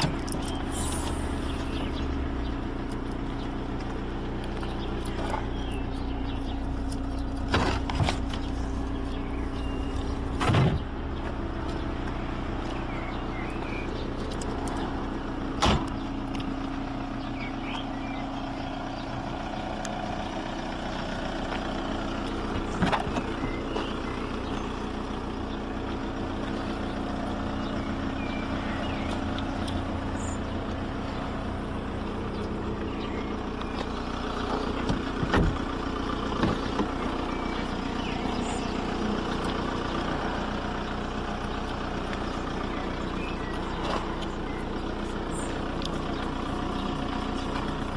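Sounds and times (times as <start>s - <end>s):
diesel engine idling: 0.0s - 47.9s
short engine knocks: 9.2s - 12.2s, 15.6s - 16.2s, 22.5s - 24.6s, 32.9s - 37.2s.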